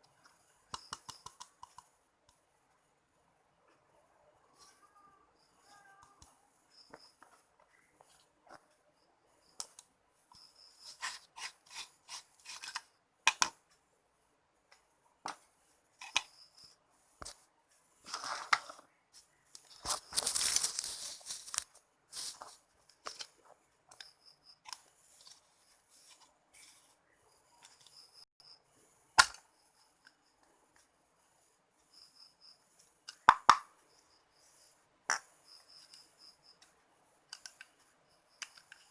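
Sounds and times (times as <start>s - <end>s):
scraping and rustling: 19.6s - 23.5s.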